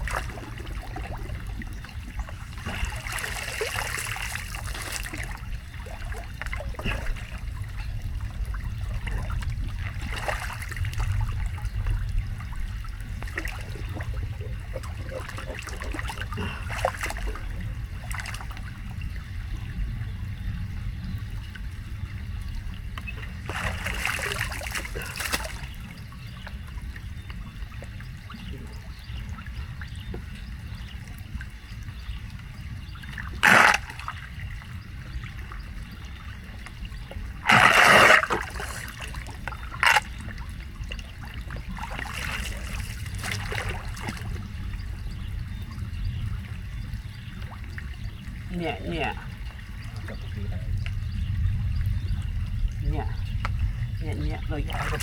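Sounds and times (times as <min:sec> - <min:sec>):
water splashing: 0:00.0 - 0:18.7, 0:23.0 - 0:26.1, 0:33.3 - 0:34.4, 0:37.2 - 0:44.8, 0:54.2 - 0:55.0
water trickling into a drain: 0:00.0 - 0:55.0.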